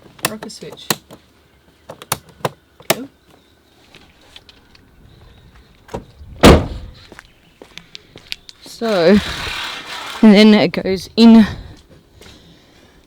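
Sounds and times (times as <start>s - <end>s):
van door thud: 5.9s - 7.0s.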